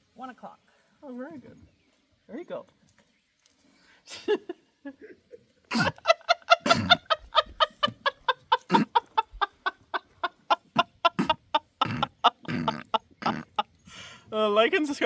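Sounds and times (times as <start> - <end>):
chicken clucking: 5.8 - 13.7.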